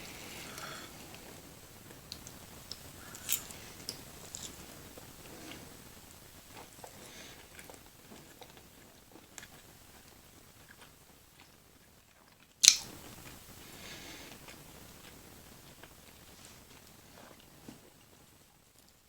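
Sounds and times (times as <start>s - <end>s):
loud crunching bite: 12.6s - 12.9s.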